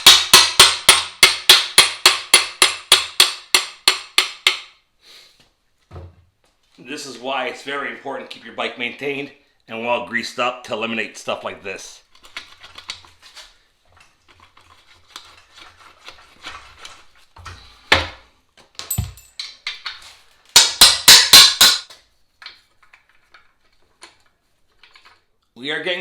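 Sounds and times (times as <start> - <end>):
hammer striking metal: 0.0 - 4.7, 20.6 - 21.9.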